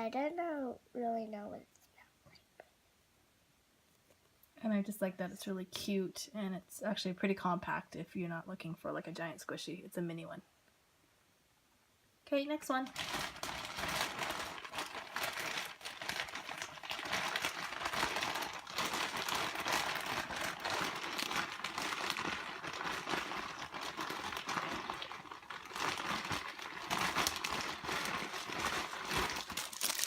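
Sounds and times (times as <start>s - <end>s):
crinkly packaging rustling: 12.8s - 30.0s.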